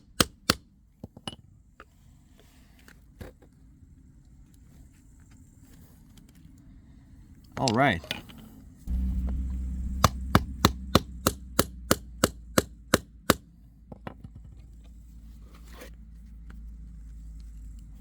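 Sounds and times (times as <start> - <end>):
low rumble: 8.8 - 15.3.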